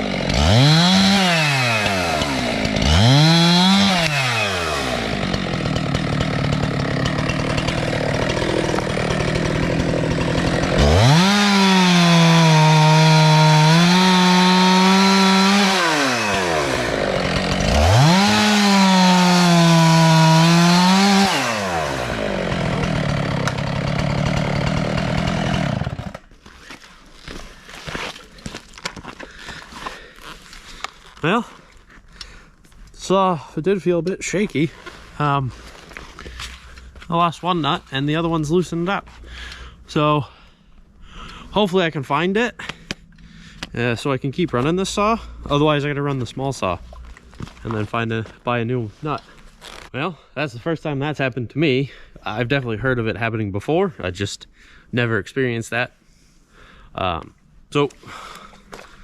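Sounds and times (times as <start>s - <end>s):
chainsaw cutting wood: 0.0s - 31.0s.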